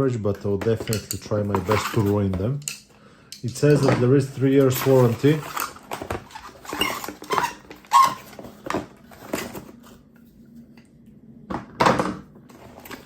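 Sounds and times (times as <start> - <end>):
packaging rustling: 3.5 - 10.0.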